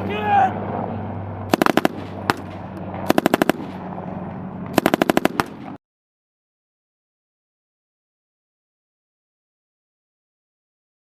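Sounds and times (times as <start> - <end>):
low hum: 0.0 - 5.8
automatic gunfire bursts: 1.5 - 3.8, 4.8 - 5.8.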